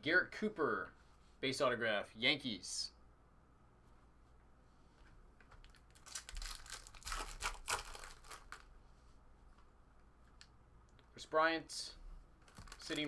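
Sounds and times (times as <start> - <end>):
foil wrapper crinkling and tearing: 5.6 - 8.7, 12.5 - 13.0.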